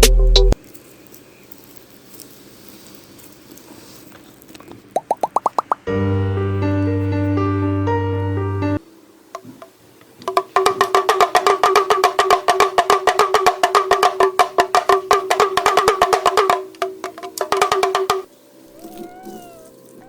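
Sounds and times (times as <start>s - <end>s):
pitched wooden knocks: 10.2s - 18.3s.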